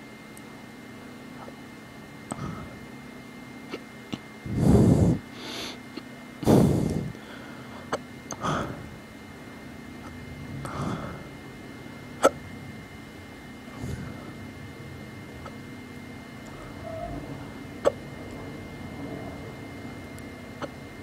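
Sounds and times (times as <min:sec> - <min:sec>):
background hum and hiss: 0:00.0 - 0:21.0
loud breaths: 0:02.3 - 0:02.8, 0:04.4 - 0:09.0, 0:10.6 - 0:11.4, 0:13.7 - 0:14.4
person hiccupping: 0:12.2 - 0:12.4.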